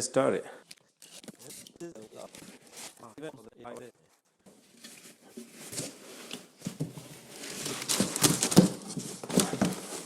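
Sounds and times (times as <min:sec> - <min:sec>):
cardboard box rustling: 0:04.6 - 0:10.0.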